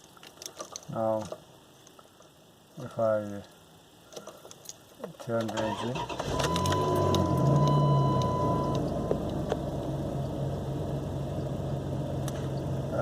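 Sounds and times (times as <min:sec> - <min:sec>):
car engine idling: 0:05.7 - 0:13.0.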